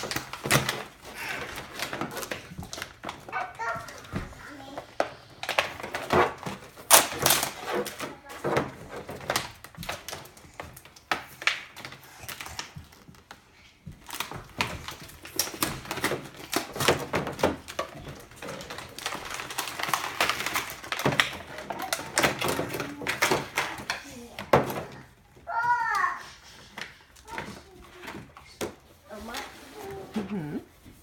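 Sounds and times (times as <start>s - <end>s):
packaging crinkling and tearing: 0.0s - 4.0s, 5.3s - 13.4s, 14.0s - 24.0s.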